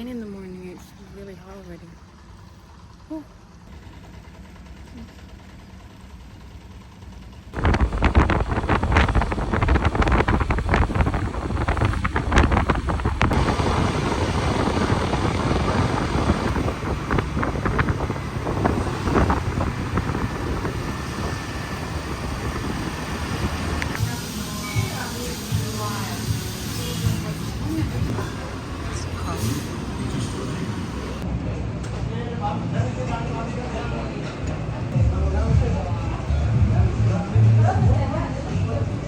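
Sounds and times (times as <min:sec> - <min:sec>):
traffic: 0:00.0 - 0:39.0
motorbike engine running: 0:01.9 - 0:29.4
wind buffeting microphone: 0:07.6 - 0:24.0.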